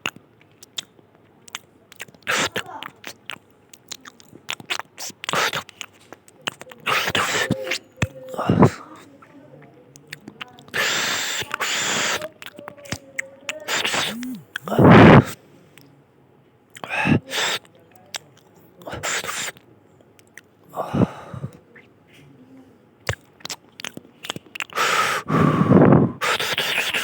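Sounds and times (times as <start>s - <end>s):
person chewing with wet clicks: 0.0s - 14.9s, 16.7s - 20.7s, 23.0s - 24.8s
breathy rush: 13.7s - 15.4s, 24.8s - 26.8s
short voiced burst: 13.7s - 15.4s.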